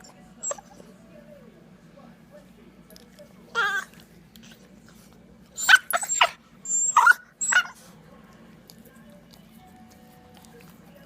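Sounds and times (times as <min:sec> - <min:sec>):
animal squeaky cries: 0:05.6 - 0:07.8.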